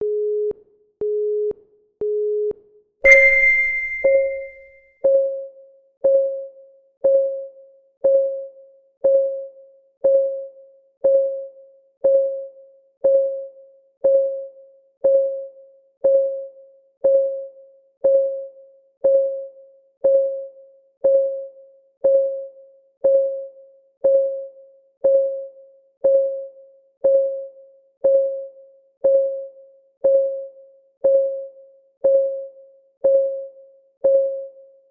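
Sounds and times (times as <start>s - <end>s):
bright chime: 3.1s - 4.6s
short electronic beeps: 3.1s - 4.6s.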